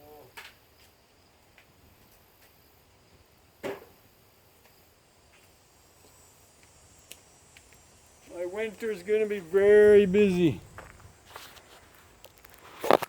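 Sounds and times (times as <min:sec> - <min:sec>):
faint insects chirping: 0:00.0 - 0:13.0.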